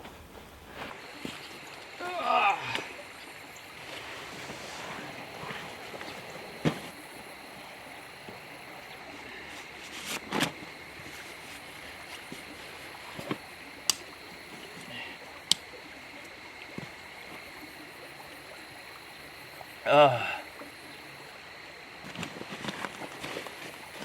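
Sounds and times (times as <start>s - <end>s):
rushing water noise: 0.0s - 24.0s.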